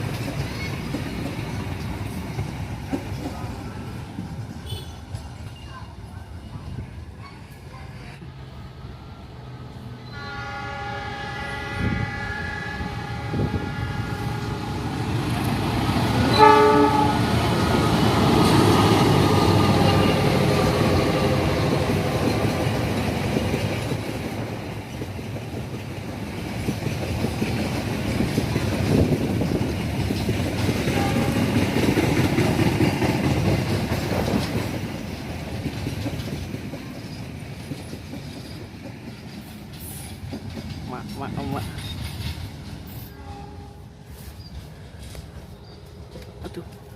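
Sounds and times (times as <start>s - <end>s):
train wheels clattering on rails: 0.0s - 6.1s, 14.2s - 43.2s, 44.3s - 46.9s
locomotive horn: 10.0s - 15.0s, 16.2s - 17.4s, 30.9s - 31.6s, 43.0s - 44.0s.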